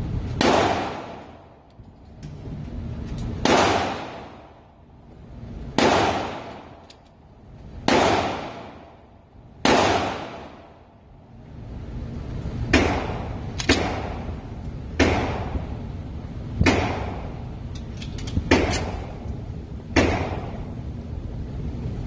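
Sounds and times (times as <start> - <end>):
handgun shots echoing: 3.4 - 4.4, 5.8 - 7.1, 12.8 - 14.2, 18.1 - 19.2, 20.0 - 20.6.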